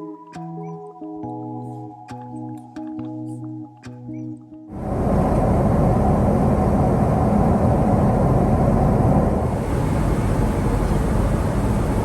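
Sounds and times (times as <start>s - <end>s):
jet airliner cabin rumble: 4.7s - 12.0s.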